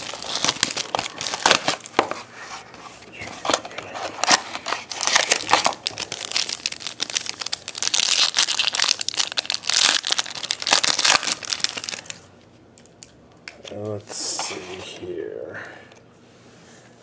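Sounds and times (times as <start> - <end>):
plastic wrapping crinkling and tearing: 0.0 - 2.2, 3.1 - 12.2.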